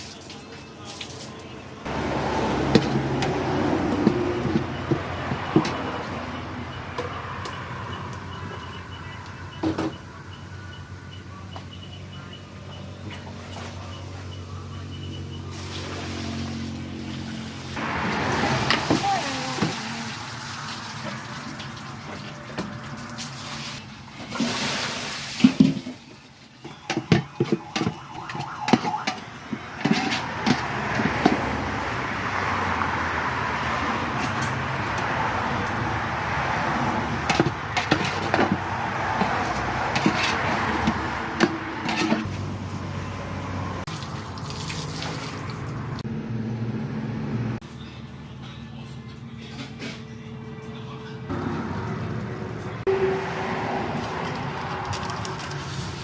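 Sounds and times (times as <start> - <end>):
water running and splashing: 15.6 - 29.7, 43.7 - 46.0.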